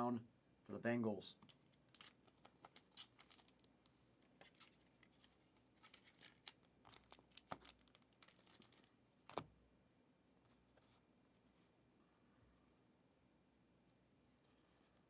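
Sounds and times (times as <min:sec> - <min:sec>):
crinkling of card packs: 0:01.4 - 0:09.5.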